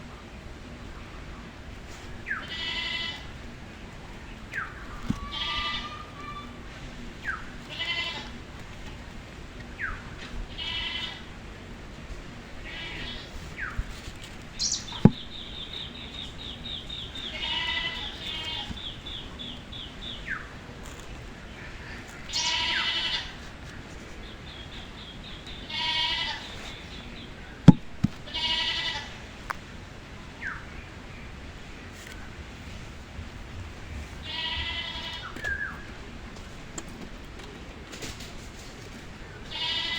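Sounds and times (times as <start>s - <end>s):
bleat-like animal calls: 2.4s - 3.3s, 5.1s - 6.7s, 7.6s - 8.4s, 10.5s - 11.3s, 17.3s - 18.8s, 21.6s - 23.4s, 25.7s - 26.6s, 28.3s - 29.2s, 34.2s - 35.3s, 39.5s - 39.9s.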